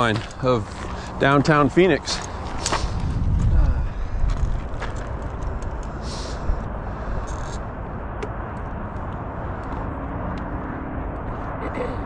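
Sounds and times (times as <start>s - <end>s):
wind noise on microphone: 2.0s - 11.6s.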